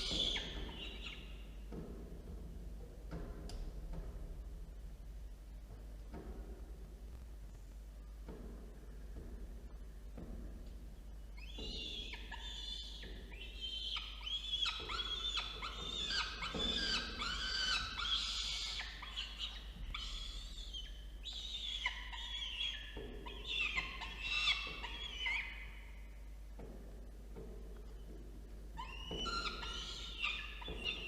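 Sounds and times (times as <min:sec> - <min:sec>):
falcon chicks chirping: 0:11.5 - 0:25.8, 0:28.8 - 0:31.0.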